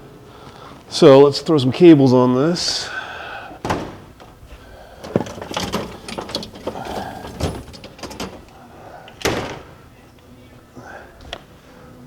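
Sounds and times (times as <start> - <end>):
metal clamp clicks and rattles: 5.0 - 8.5.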